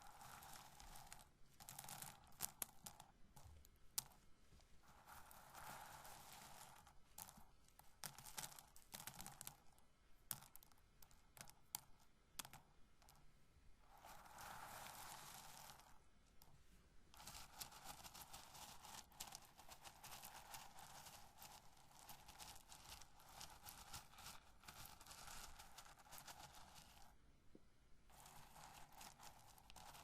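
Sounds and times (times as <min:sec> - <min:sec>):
corn kernels rustling: 0:17.2 - 0:27.2, 0:28.1 - 0:30.0
kernels tapping and dropping: 0:28.1 - 0:30.0.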